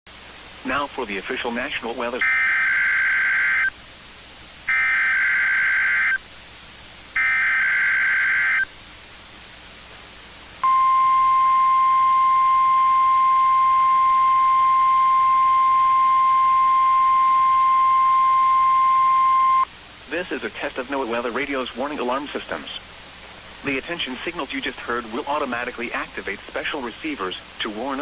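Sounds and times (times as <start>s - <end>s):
steady alarm attention tone: 7.2s - 8.6s, 10.6s - 19.7s.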